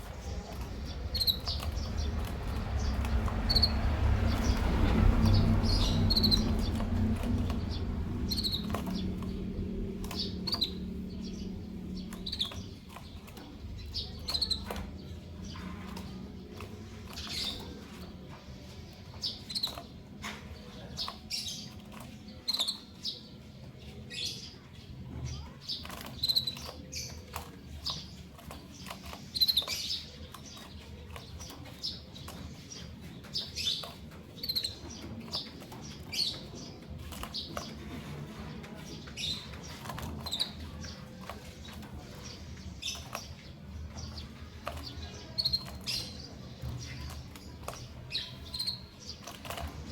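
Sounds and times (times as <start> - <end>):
steady low hum: 0.0 - 14.2.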